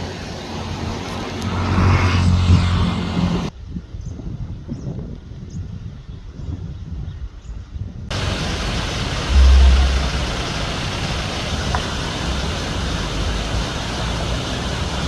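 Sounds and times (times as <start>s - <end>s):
low rumble: 8.1s - 11.7s
waterfall roaring: 8.1s - 15.0s.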